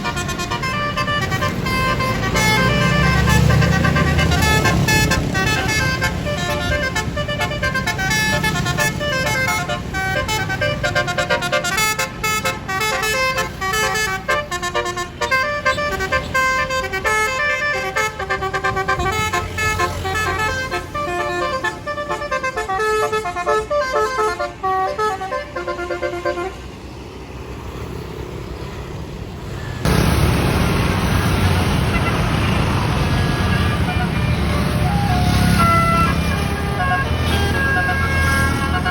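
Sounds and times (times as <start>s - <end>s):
multi-tone bus horn melody: 0.0s - 26.7s, 31.4s - 38.9s
road noise: 0.0s - 38.9s
low engine hum: 26.2s - 38.9s.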